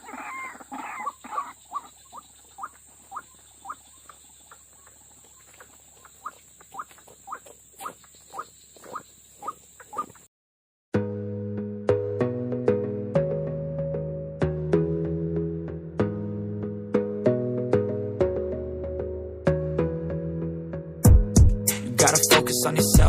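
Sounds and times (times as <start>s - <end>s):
waterhen calling: 0.0s - 10.3s.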